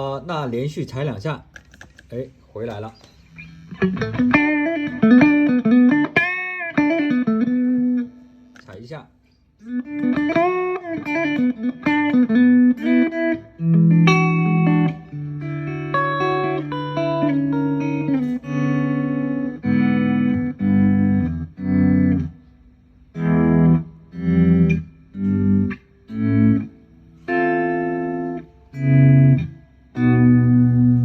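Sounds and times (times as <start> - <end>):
electric guitar swelling chords: 9.6 - 31.0.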